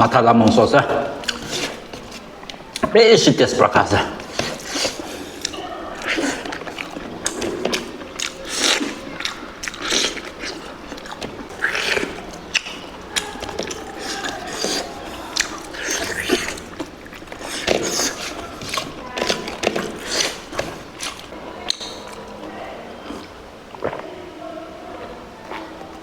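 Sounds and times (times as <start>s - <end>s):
person chewing food: 0.5s - 24.2s, 25.0s - 26.0s
crunchy bites: 4.2s - 22.2s.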